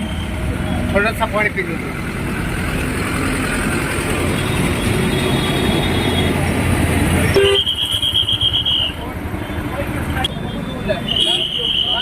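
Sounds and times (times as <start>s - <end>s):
motor vehicle running: 0.0s - 12.0s
road traffic noise: 0.0s - 12.0s.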